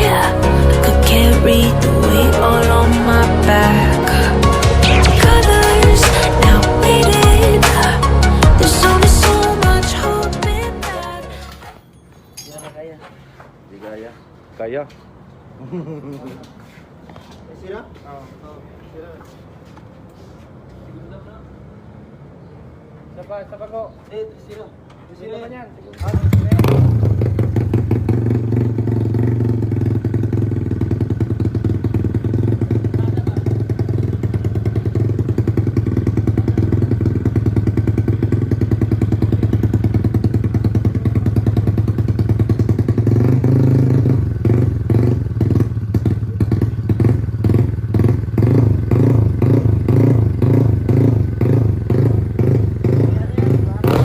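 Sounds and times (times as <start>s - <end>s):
motorcycle engine revving: 26.0s - 54.0s.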